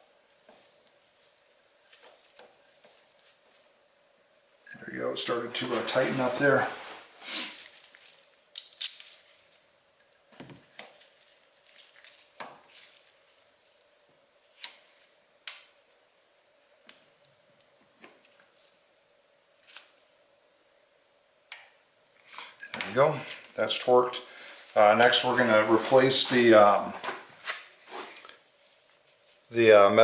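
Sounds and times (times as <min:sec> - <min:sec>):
faint steady hum: 0:00.0 - 0:30.0.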